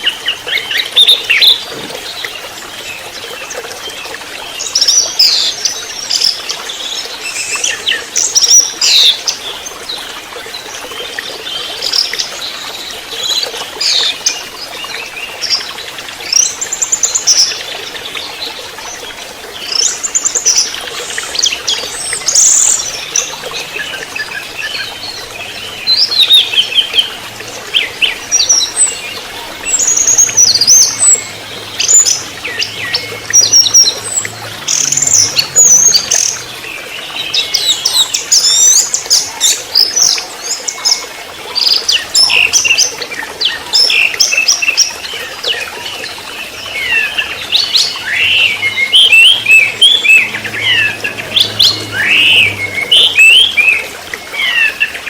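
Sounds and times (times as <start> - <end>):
thrush singing: 46.4 - 55.0.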